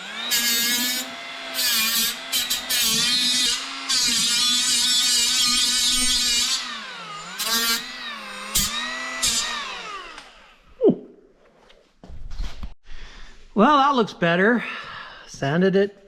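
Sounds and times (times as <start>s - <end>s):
power sander whining and grinding: 0.0s - 10.7s.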